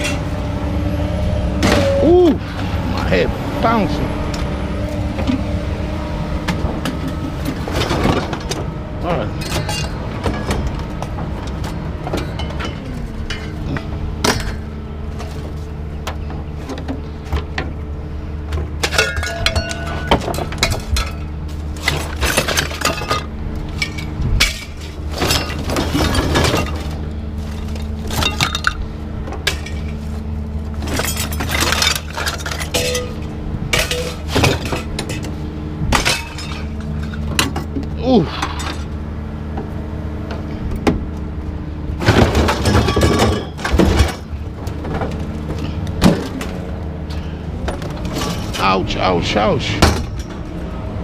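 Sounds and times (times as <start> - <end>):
steady low hum: 0.0 - 51.0
metal parts clinking and rattling: 9.3 - 17.0, 18.8 - 39.0, 42.0 - 48.7, 49.6 - 50.5.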